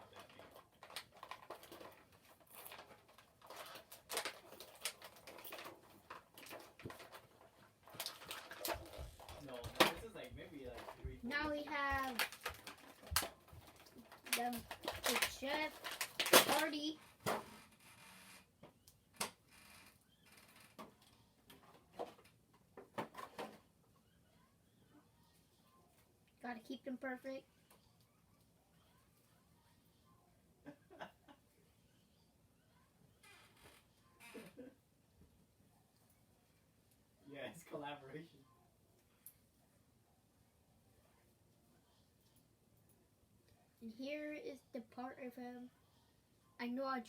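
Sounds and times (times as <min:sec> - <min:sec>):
plastic packaging crackling: 0:11.4 - 0:16.9.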